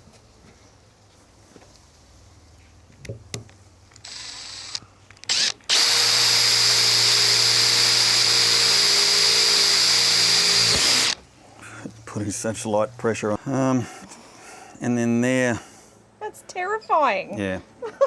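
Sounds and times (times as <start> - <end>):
drill clicks: 4.0 - 11.2
electric drill whining through metal: 4.0 - 11.2.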